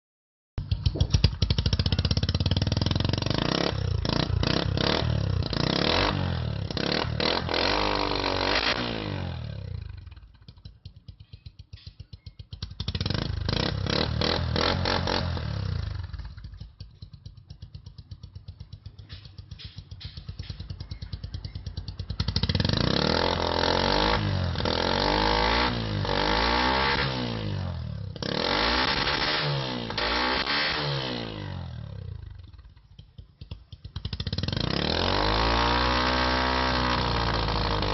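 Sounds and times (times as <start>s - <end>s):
motorcycle engine idling: 0.6s - 4.6s, 9.6s - 13.5s, 15.8s - 22.9s, 31.8s - 34.6s
motorcycle engine revving: 0.6s - 37.9s.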